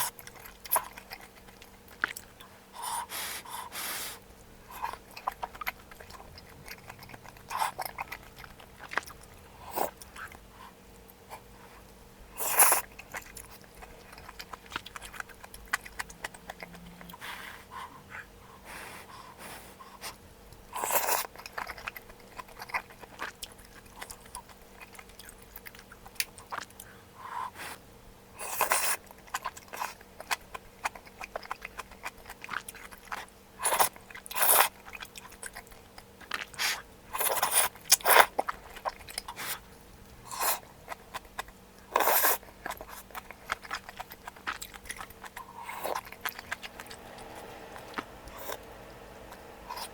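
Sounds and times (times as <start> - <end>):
person chewing and biting: 4.7 - 10.4, 12.4 - 17.2, 40.3 - 49.9.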